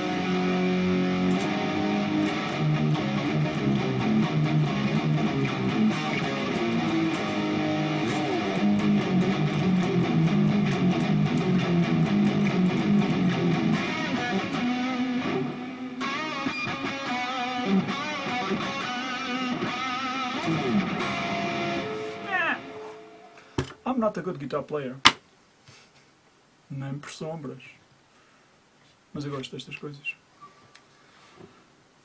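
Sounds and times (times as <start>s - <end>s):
electric guitar playing: 0.0s - 23.4s.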